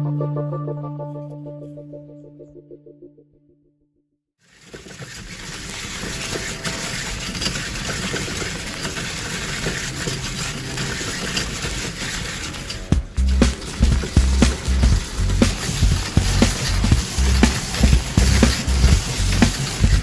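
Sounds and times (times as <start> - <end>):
cutter scraping wood: 4.5 - 20.0
power tool motor humming: 4.6 - 20.0.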